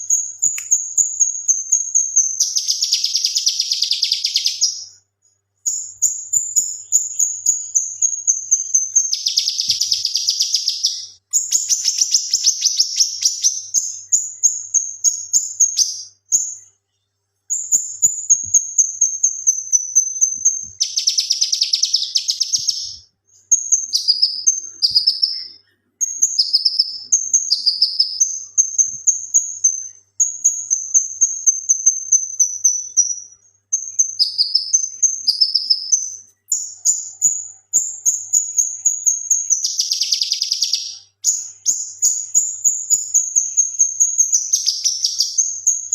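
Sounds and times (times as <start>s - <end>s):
bird rapid chattering: 9.0s - 13.9s.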